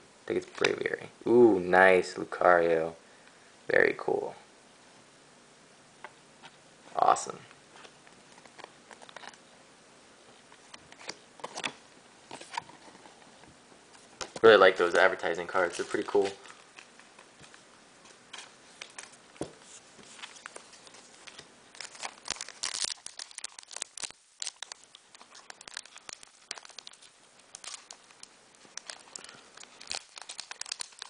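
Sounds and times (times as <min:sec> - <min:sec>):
foil pack crinkling and tearing: 0:14.2 - 0:17.2, 0:20.0 - 0:31.0.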